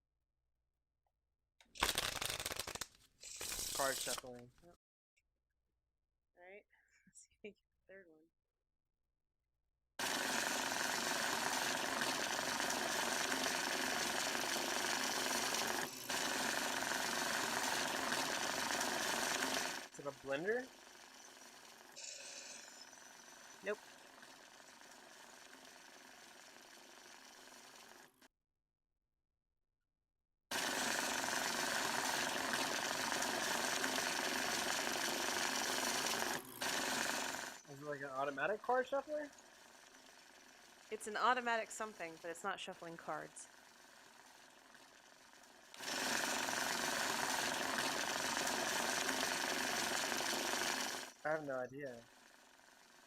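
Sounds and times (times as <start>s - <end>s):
banknote counter rattling: 1.8s - 4.2s
banknote counting machine whirring: 1.8s - 4.3s, 10.0s - 28.2s, 30.5s - 53.0s.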